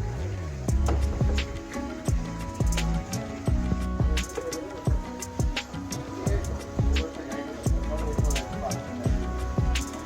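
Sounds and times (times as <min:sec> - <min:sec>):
sustained melody: 0:00.0 - 0:10.0
kick drum thumps: 0:00.7 - 0:01.5, 0:02.1 - 0:02.8, 0:03.5 - 0:04.2, 0:04.9 - 0:05.6, 0:06.3 - 0:07.0, 0:07.7 - 0:08.4, 0:09.1 - 0:09.8.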